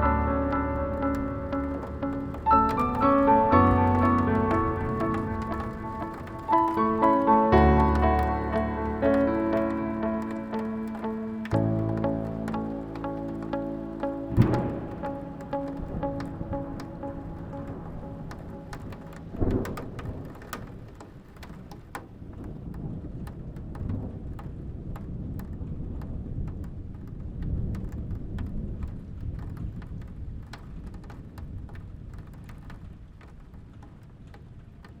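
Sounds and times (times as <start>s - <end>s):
low rolling thunder: 0.0s - 12.0s, 14.2s - 21.7s
thunderclap: 0.0s - 12.7s, 14.2s - 33.2s
raindrops clicking close by: 0.0s - 35.0s
steady rain: 0.0s - 35.0s.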